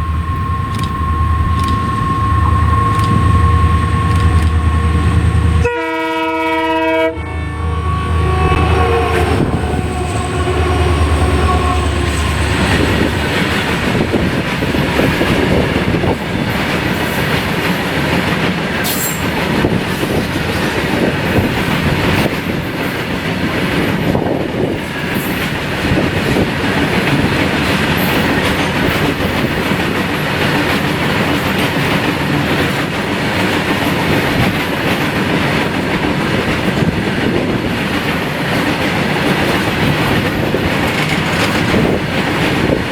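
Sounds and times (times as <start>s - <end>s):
train horn: 0.0s - 13.1s
locomotive engine hum: 0.0s - 22.6s
train wheels rumbling on rails: 0.0s - 42.9s.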